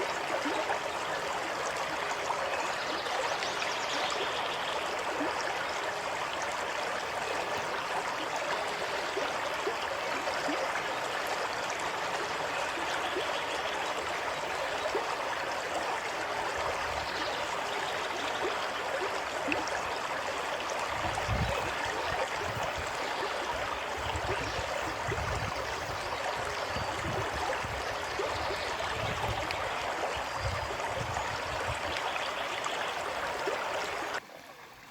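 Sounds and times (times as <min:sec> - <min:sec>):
running water rushing: 0:00.0 - 0:34.9.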